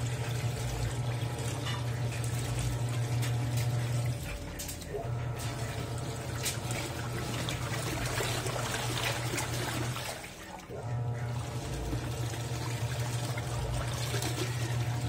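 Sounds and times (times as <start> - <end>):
washing machine motor hum: 0.0 - 15.0
water sloshing in washing machine: 0.0 - 15.0.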